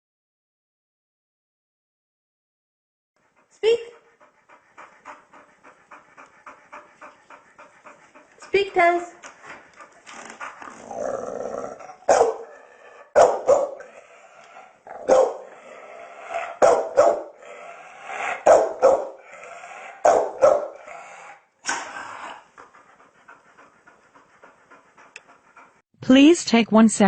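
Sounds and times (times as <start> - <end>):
dog growling: 4.2 - 25.8
dog barking: 12.0 - 14.0, 15.0 - 15.6, 16.3 - 17.4, 18.1 - 19.2, 19.8 - 20.9.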